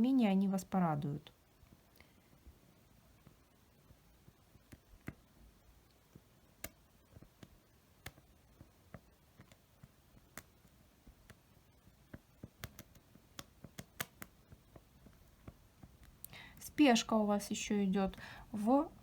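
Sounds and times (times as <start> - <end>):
faint sharp clicks and taps: 1.3 - 16.8.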